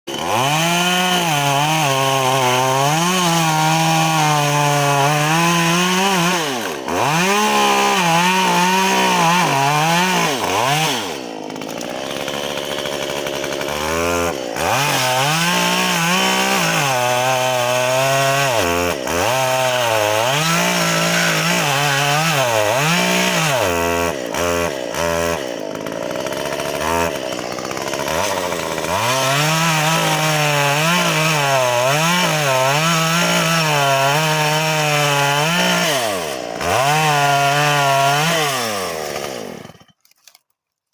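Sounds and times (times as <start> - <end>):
chainsaw cutting wood: 0.1 - 40.9.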